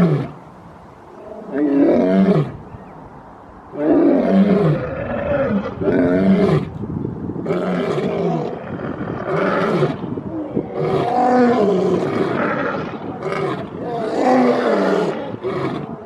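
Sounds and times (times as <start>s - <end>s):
lion roaring: 3.8s - 6.7s, 7.5s - 16.0s.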